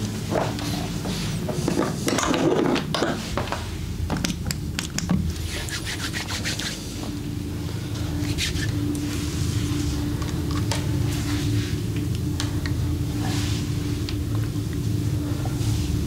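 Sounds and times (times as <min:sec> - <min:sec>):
steady low hum: 0:00.0 - 0:16.0
hands rubbing over skin: 0:05.5 - 0:07.0, 0:08.2 - 0:08.8.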